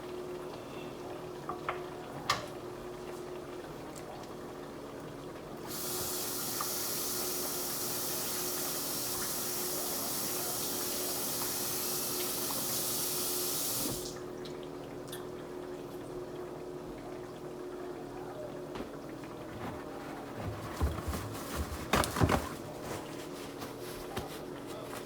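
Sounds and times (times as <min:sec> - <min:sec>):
tap water running into sink: 0:05.7 - 0:17.8.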